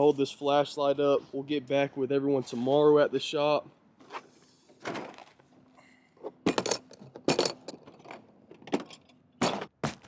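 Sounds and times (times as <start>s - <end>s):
clinks and clattering knocks: 6.5s - 9.7s.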